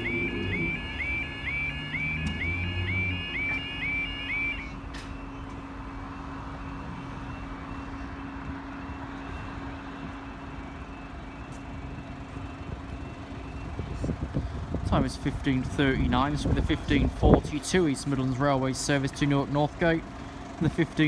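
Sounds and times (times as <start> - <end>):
warbling tone: 0.0 - 4.5
constant low hum: 0.0 - 11.7
traffic noise: 0.0 - 21.0.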